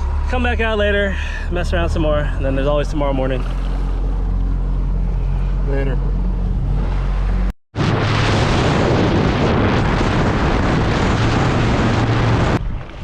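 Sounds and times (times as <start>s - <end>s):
motorboat engine humming: 0.0s - 8.5s.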